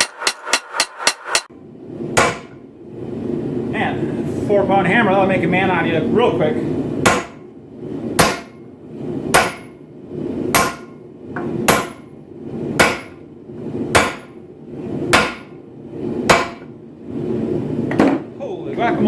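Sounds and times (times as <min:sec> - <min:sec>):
hammer striking steel on anvil: 0:00.0 - 0:01.5, 0:02.2 - 0:02.6, 0:07.0 - 0:07.4, 0:08.2 - 0:08.6, 0:09.3 - 0:09.8, 0:10.5 - 0:12.1, 0:12.8 - 0:13.2, 0:13.9 - 0:14.4, 0:15.1 - 0:15.6, 0:16.3 - 0:16.7.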